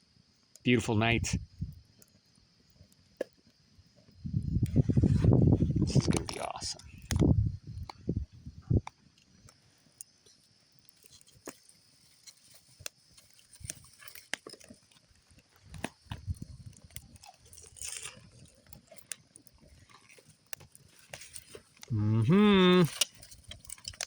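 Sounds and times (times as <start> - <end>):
campfire crackling: 0.0 - 24.0
popcorn being chewed: 9.2 - 24.0.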